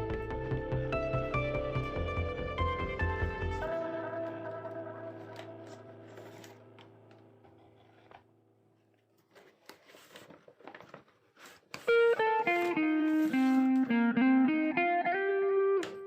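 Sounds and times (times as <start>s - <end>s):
plucked guitar music: 0.0s - 7.4s, 11.8s - 16.0s
soft background music: 0.0s - 8.6s, 11.8s - 16.0s.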